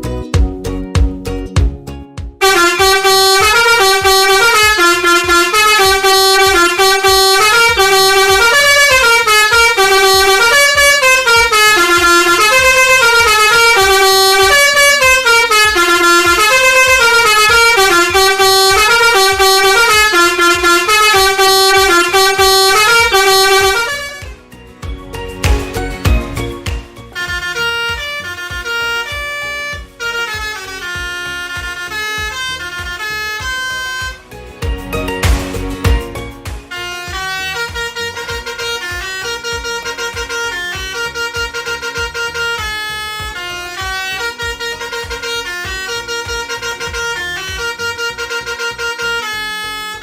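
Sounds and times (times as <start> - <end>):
multi-tone bus air horn melody: 2.4 - 50.0.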